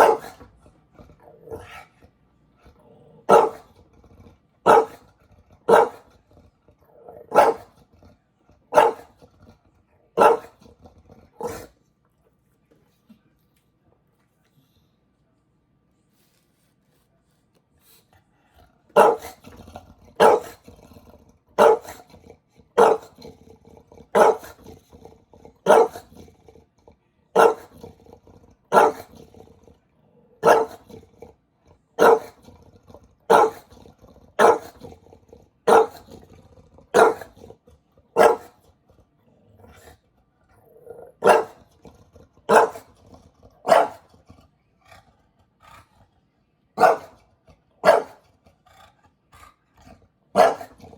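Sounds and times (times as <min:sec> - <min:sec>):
dog barking: 0:00.0 - 0:00.5, 0:03.3 - 0:03.7, 0:04.6 - 0:06.1, 0:07.0 - 0:07.8, 0:08.7 - 0:09.2, 0:10.2 - 0:10.6, 0:11.4 - 0:11.7, 0:18.9 - 0:19.4, 0:20.2 - 0:20.6, 0:21.6 - 0:22.1, 0:22.8 - 0:23.2, 0:24.1 - 0:24.6, 0:25.6 - 0:26.1, 0:27.4 - 0:27.8, 0:28.7 - 0:29.1, 0:30.4 - 0:30.9, 0:32.0 - 0:32.4, 0:33.3 - 0:33.7, 0:34.4 - 0:34.8, 0:35.6 - 0:36.1, 0:36.9 - 0:37.4, 0:38.2 - 0:38.6, 0:41.0 - 0:41.6, 0:42.5 - 0:43.0, 0:43.6 - 0:44.1, 0:46.8 - 0:47.2, 0:47.8 - 0:48.2, 0:50.3 - 0:50.8.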